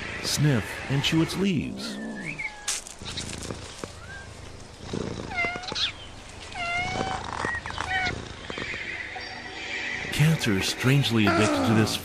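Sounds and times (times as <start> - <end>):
cat meowing: 11.3 - 12.0.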